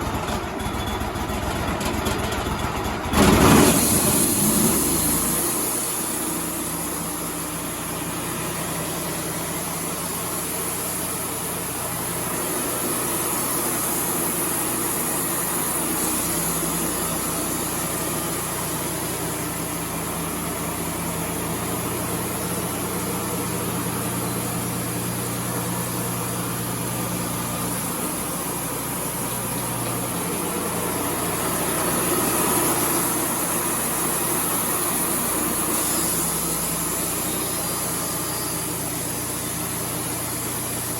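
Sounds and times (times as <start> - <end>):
sawmill engine drone: 0.0 - 40.9
saw cutting hiss: 3.2 - 40.9.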